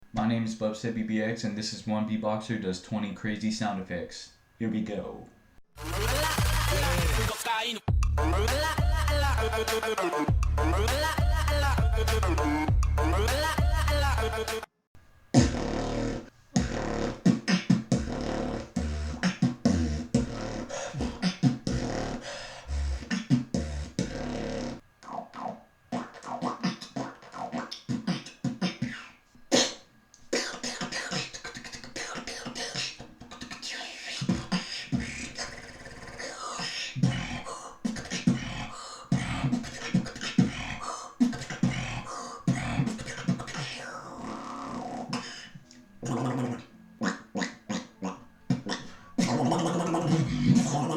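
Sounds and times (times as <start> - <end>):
beatboxing mouth percussion: 5.8 - 14.7, 15.3 - 50.9
deep pulsing bass: 7.9 - 9.7, 10.3 - 14.5.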